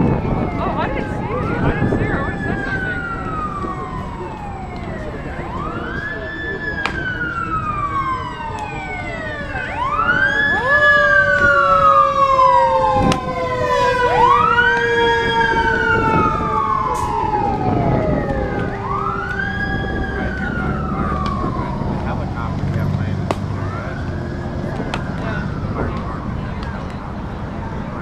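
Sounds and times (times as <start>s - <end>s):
emergency vehicle siren wailing: 0.0s - 28.0s.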